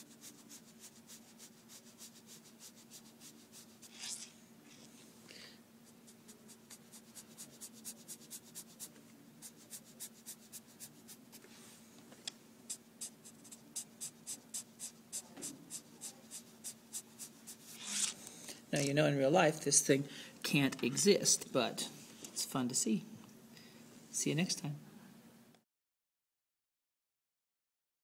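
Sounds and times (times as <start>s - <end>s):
pencil scratching on paper: 0.0s - 4.3s, 5.9s - 11.4s, 12.7s - 18.1s.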